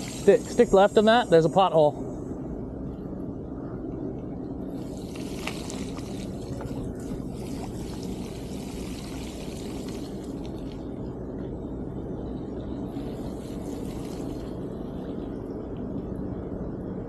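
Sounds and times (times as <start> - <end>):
bike tyres rolling through water: 0.0 - 0.5, 4.7 - 11.0, 12.6 - 16.0
water hissing and spraying: 0.0 - 1.3, 4.8 - 10.8, 12.9 - 14.7
wind rumble on microphone: 0.0 - 17.0.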